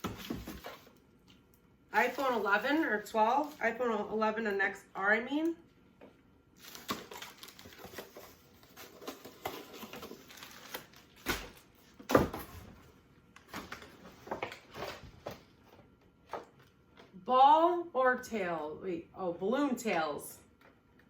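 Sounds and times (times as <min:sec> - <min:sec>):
loud packaging crackles: 0:02.0 - 0:03.7, 0:06.6 - 0:11.9
packaging rustling and crinkling: 0:02.0 - 0:03.8, 0:06.6 - 0:12.6.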